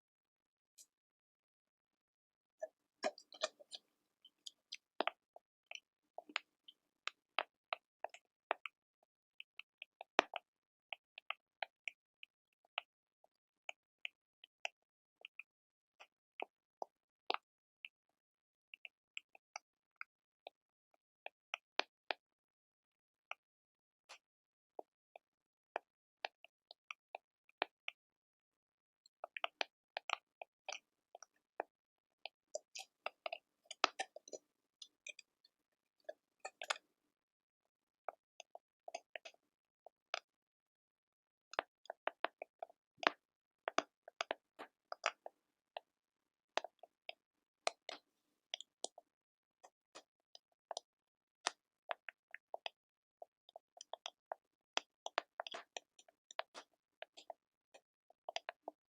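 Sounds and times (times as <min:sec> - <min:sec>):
small clicks and pops crackling: 0:02.6 - 0:18.0, 0:29.0 - 0:36.9, 0:38.0 - 0:40.3, 0:41.5 - 0:45.9, 0:46.6 - 0:58.9.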